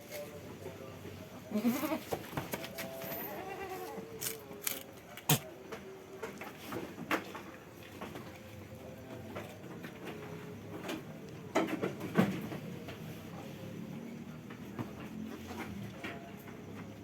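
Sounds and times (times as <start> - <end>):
goat bleating: 1.5 - 2.2, 3.0 - 4.1.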